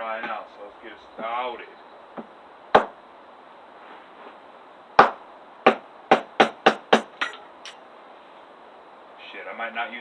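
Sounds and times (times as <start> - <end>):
hatchet striking firewood: 2.2 - 3.0, 5.0 - 7.5.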